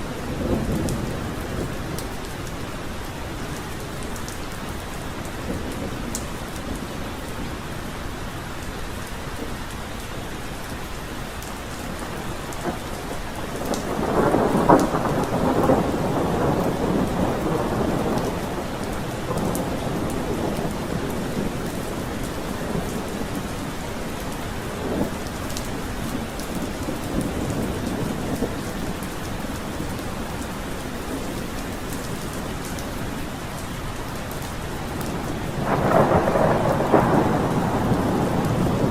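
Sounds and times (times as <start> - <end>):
heavy rain: 0.0 - 38.9
thunder rumbling: 11.9 - 33.6, 34.2 - 38.9.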